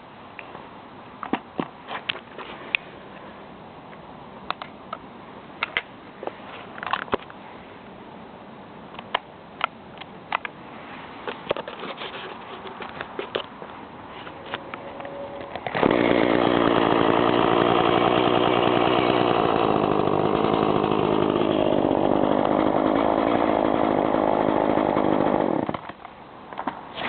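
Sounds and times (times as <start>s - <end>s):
chainsaw engine running: 15.7s - 25.8s.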